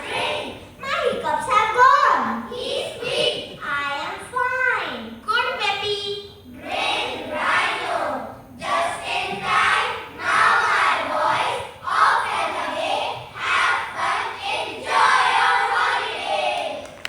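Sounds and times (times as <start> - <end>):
children reciting in unison: 0.0 - 1.2, 2.2 - 3.6, 6.5 - 17.0.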